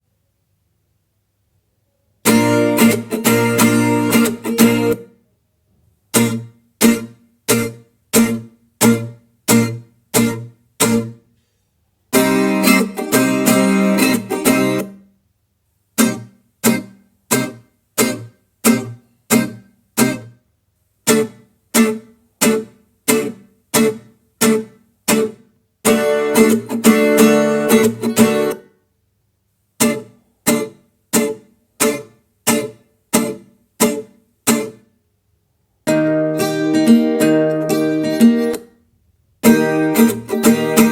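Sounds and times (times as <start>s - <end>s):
guitar pop music: 2.3s - 5.1s, 6.2s - 11.2s, 12.2s - 15.0s, 16.0s - 20.3s, 21.1s - 28.6s, 29.8s - 34.8s, 35.9s - 38.7s, 39.4s - 40.9s.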